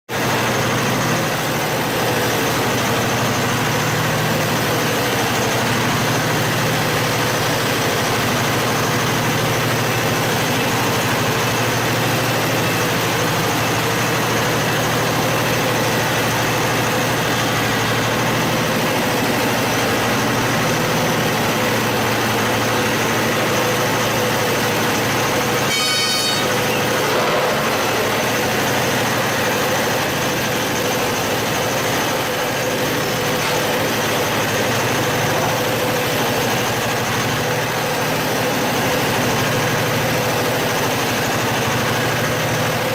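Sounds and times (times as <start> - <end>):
heavy machinery engine running: 0.1 - 42.9
short horn toot: 25.6 - 27.5.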